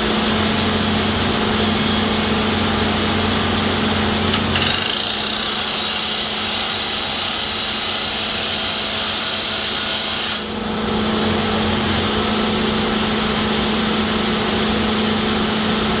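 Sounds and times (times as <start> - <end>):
drill rig steady hum: 0.0 - 16.0
loud hissing drilling: 0.8 - 10.6.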